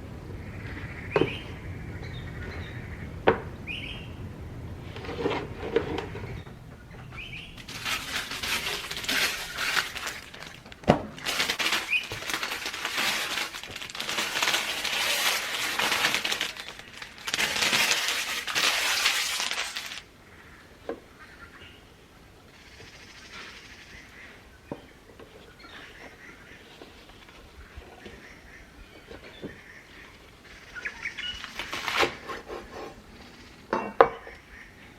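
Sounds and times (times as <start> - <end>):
crinkling rustling noise: 4.6 - 20.1, 25.0 - 32.8.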